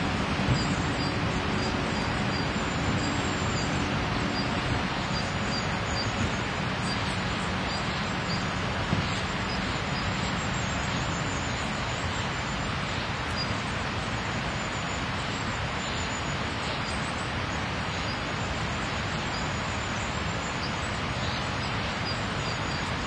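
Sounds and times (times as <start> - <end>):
steady rushing background noise: 0.0 - 23.0
cricket chirping: 0.5 - 8.5.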